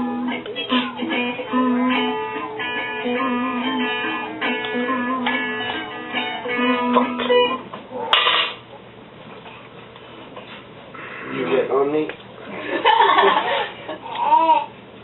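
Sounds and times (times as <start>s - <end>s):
plucked guitar music: 0.0s - 7.8s
low room noise: 0.0s - 15.0s.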